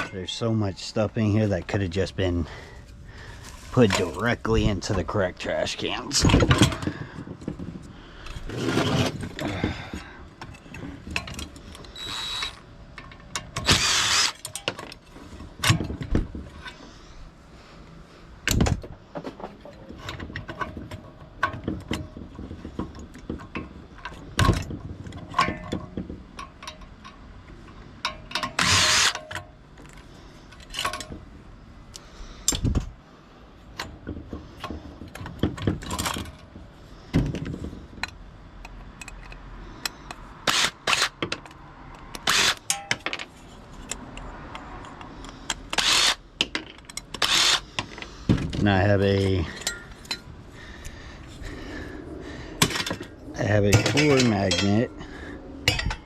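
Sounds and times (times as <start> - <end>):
scrap metal clanking: 2.5 - 11.8, 52.6 - 56.0.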